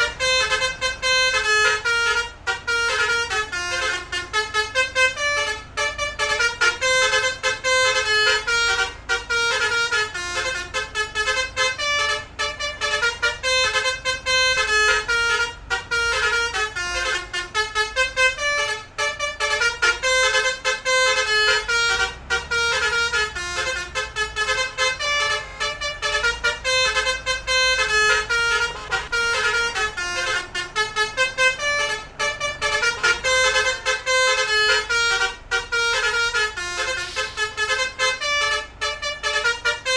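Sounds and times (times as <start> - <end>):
musical vehicle horn tune: 0.0 - 39.9.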